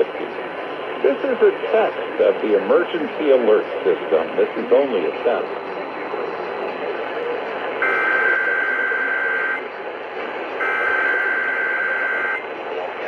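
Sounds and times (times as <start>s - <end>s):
radio hiss: 0.0s - 13.0s
raspy two-tone digital data signals: 10.6s - 12.4s.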